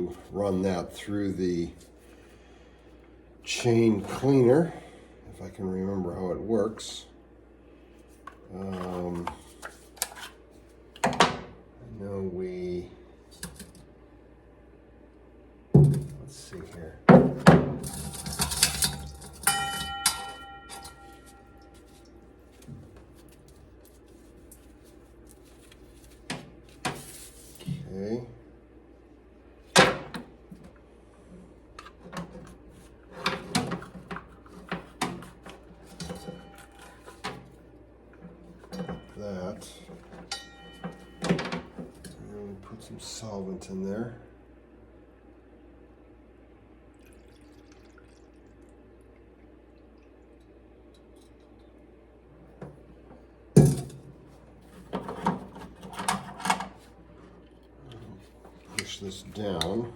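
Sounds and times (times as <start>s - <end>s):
bicycle parts clicking and clattering: 17.8s - 22.0s.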